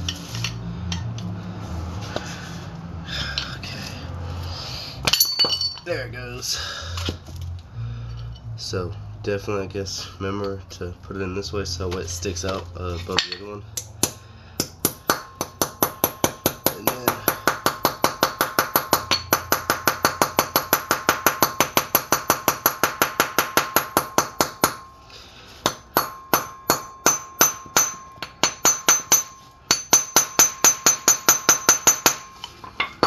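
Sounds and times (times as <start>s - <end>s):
hammer striking steel: 13.2s - 25.0s, 25.6s - 33.0s.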